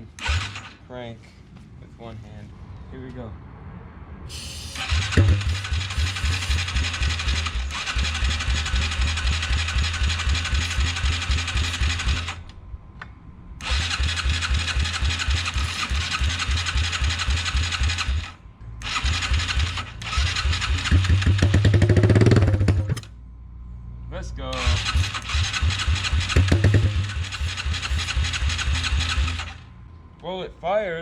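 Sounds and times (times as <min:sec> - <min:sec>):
engine cranking on starter: 0:00.0 - 0:00.8, 0:04.4 - 0:12.5, 0:13.6 - 0:23.1, 0:24.5 - 0:29.7.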